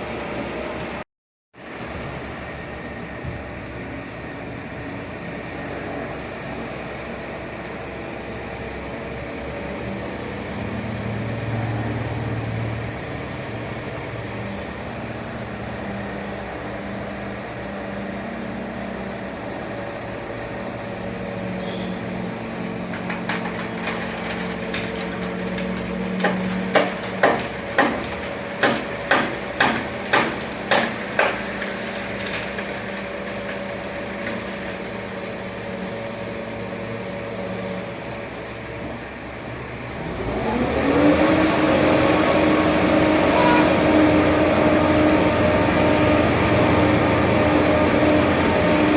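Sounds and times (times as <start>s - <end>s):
construction machine engine running: 1.6s - 48.9s
sharp knocks: 25.7s - 31.5s.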